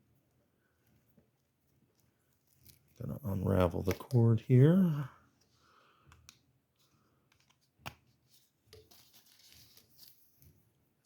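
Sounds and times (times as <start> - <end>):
soft rustles: 8.1 - 10.8.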